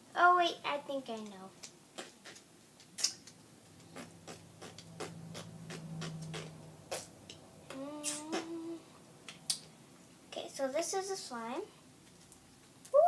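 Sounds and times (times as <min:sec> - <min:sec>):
steady low hum: 0:03.3 - 0:12.2
person humming hmm: 0:07.7 - 0:08.9.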